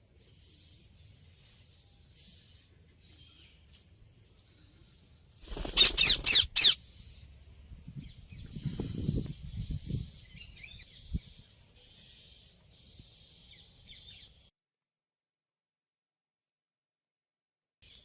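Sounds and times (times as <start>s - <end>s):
parrot screeching: 5.8s - 6.8s.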